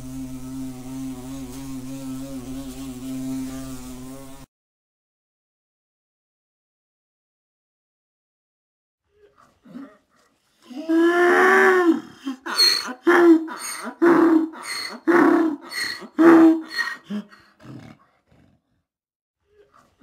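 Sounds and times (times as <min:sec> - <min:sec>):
animal grunting: 0:11.1 - 0:18.8
farm animal calling: 0:12.4 - 0:17.3.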